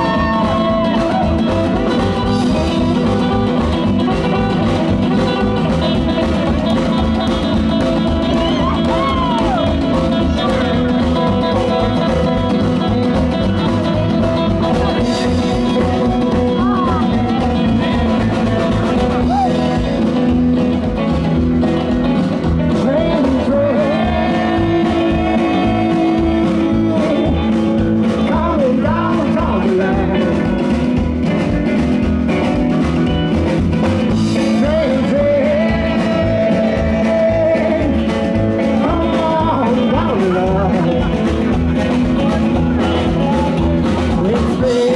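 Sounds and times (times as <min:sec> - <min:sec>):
blues harp wailing: 0:00.0 - 0:05.8, 0:08.0 - 0:11.7, 0:19.0 - 0:20.0
live blues-rock band: 0:00.0 - 0:44.9.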